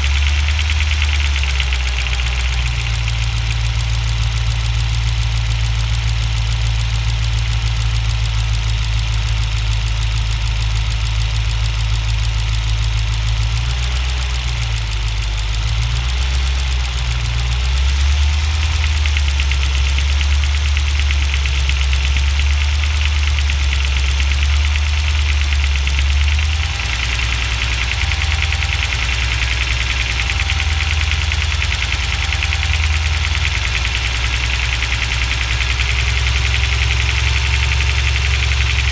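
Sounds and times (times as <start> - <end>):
car engine running: 0.0 - 38.9.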